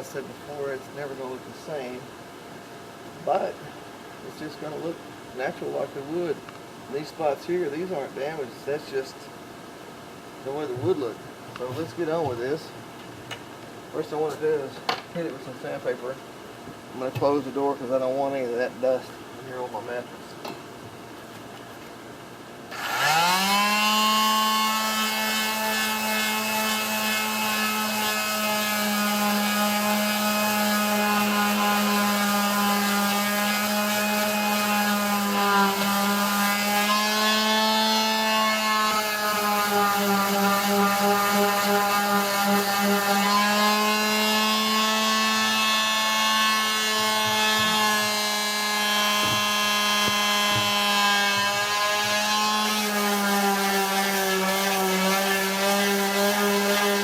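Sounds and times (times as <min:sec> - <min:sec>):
electric sander running: 0:22.7 - 0:57.0.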